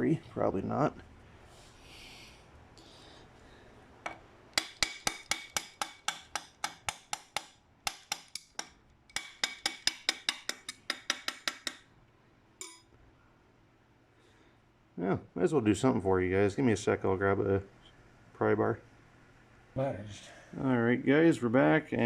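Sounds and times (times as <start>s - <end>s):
hammer striking metal: 4.1s - 11.8s, 12.6s - 12.9s.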